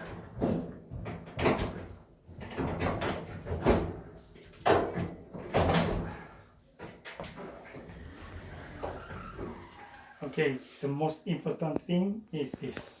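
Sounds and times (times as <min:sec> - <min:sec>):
appliance panels knocking and clattering: 0:00.0 - 0:06.2.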